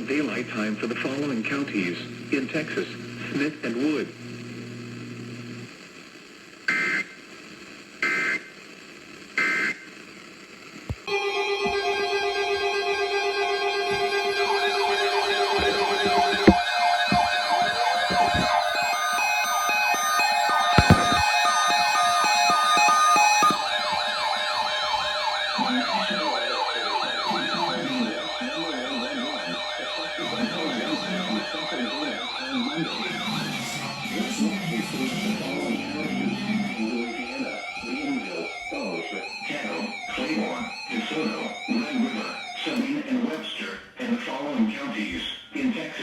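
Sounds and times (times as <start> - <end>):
steady held tones: 9.5 - 42.5
electronic siren wailing: 11.1 - 42.9
raspy digital data bursts: 14.1 - 38.6.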